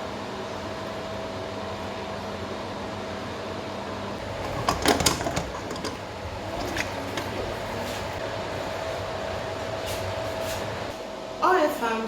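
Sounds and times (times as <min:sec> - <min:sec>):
cookware knocking: 0:04.4 - 0:06.0.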